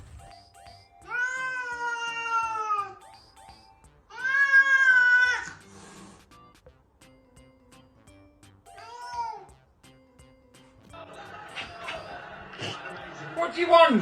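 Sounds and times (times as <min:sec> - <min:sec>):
cat meowing: 0:01.1 - 0:03.0, 0:04.1 - 0:05.6.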